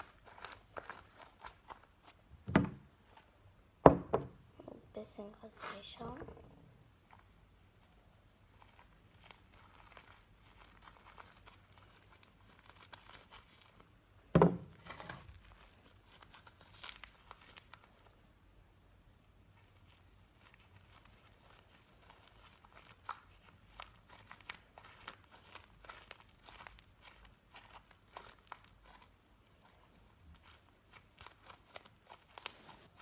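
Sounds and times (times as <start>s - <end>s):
loud thump: 3.8s - 4.4s, 14.4s - 14.7s
slime crackling and sticky clicks: 30.4s - 32.7s.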